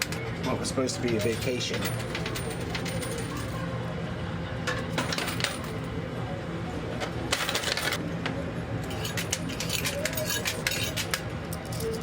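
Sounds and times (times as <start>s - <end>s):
coin machine hum: 0.0s - 6.3s, 7.2s - 8.0s, 8.7s - 12.0s
coins clinking: 0.9s - 3.6s, 4.7s - 5.9s, 7.3s - 8.0s, 8.8s - 12.0s.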